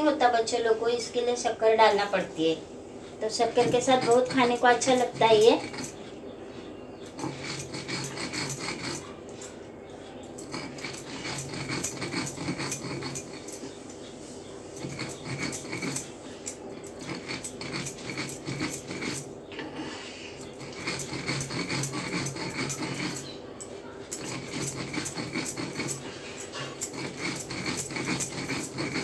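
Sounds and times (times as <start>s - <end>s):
stone grinder scraping: 3.3s - 6.0s, 7.1s - 9.2s, 10.3s - 13.8s, 14.8s - 19.3s, 20.4s - 29.0s.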